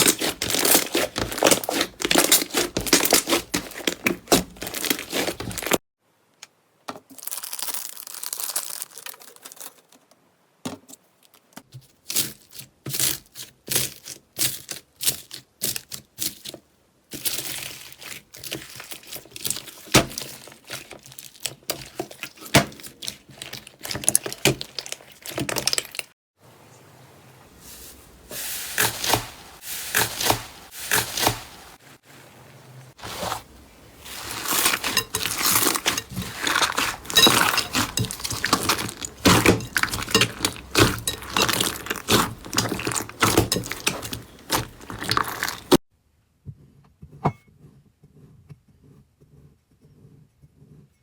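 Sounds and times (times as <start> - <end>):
slime crackling and popping: 0.0 - 5.8, 7.2 - 9.1, 34.1 - 45.8
soft squishing: 0.0 - 5.8, 11.2 - 26.2, 27.0 - 45.8.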